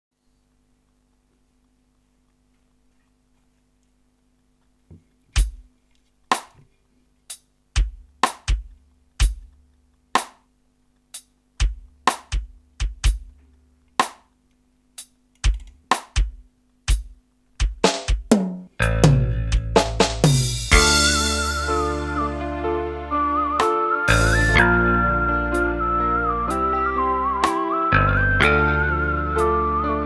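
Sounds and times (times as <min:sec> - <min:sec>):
faint steady hum: 0:00.2 - 0:27.4
kick drum hits: 0:05.4 - 0:05.7, 0:07.8 - 0:09.5, 0:11.6 - 0:13.3, 0:15.4 - 0:21.0
snare drum hits: 0:06.3 - 0:06.6, 0:07.8 - 0:09.4, 0:10.2 - 0:10.5, 0:11.6 - 0:13.3, 0:14.0 - 0:14.3, 0:15.4 - 0:18.8, 0:19.5 - 0:21.9.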